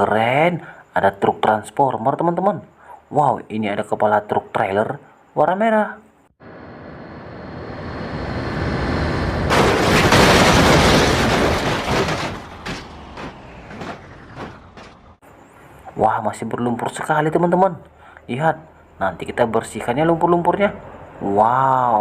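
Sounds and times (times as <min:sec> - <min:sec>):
rumbling noise: 0:06.4 - 0:15.2.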